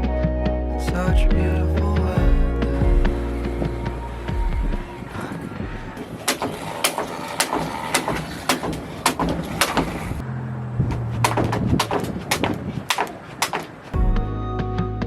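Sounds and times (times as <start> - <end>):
jump rope slapping ground: 6.2 - 10.2, 11.2 - 14.0.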